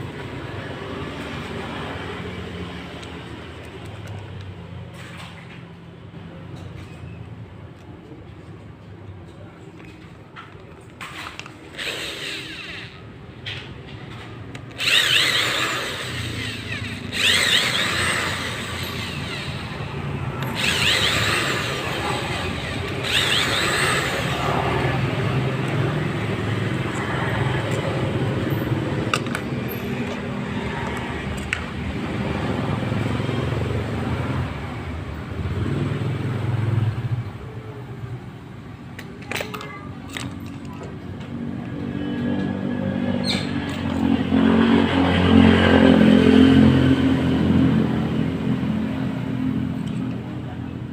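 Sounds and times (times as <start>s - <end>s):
angle grinder running roughly: 11.7s - 13.2s, 14.6s - 33.1s.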